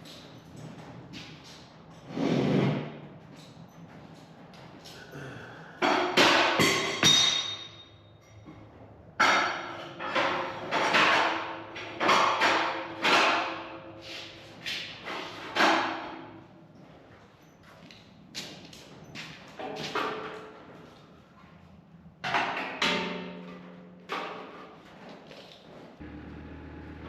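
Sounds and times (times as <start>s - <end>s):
sharp ringing metal clanks: 6.6s - 8.4s.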